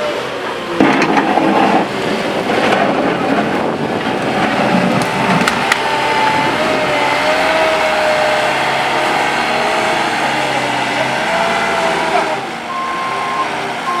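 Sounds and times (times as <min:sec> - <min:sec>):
whining tone: 0:00.5 - 0:14.0
truck engine running: 0:00.6 - 0:14.0
reversing beeper: 0:04.8 - 0:14.0.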